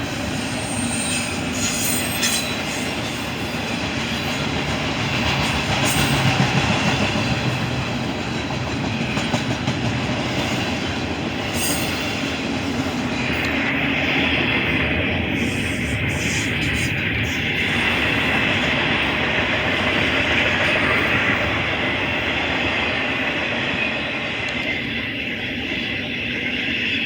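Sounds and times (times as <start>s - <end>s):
freight train cars rumbling: 0.0s - 27.0s
high wheel squeals: 0.4s - 3.6s, 11.4s - 12.2s.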